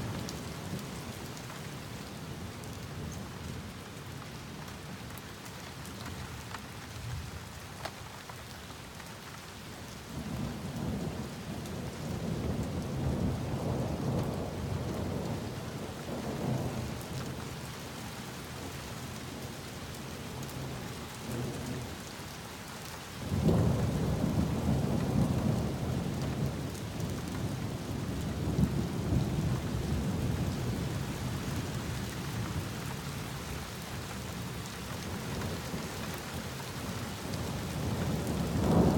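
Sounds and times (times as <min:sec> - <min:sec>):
rain falling: 0:00.0 - 0:38.9
thunder rumbling: 0:37.2 - 0:38.9.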